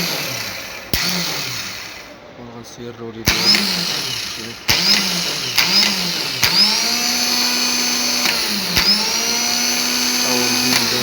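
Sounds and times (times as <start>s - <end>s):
starter motor whining: 0.0s - 2.2s, 3.2s - 11.0s
starter motor switch click: 8.2s - 9.0s, 10.5s - 11.0s.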